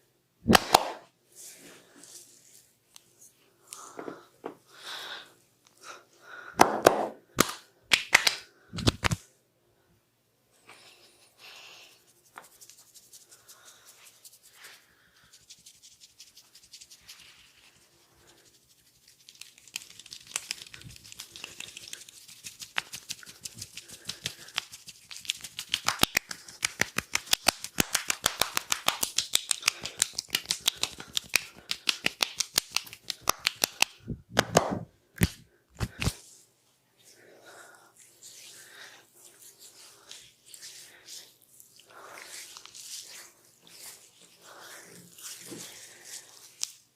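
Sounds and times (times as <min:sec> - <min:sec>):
hands tapping and slapping head: 0:00.5 - 0:01.1, 0:06.6 - 0:09.2, 0:19.3 - 0:36.2.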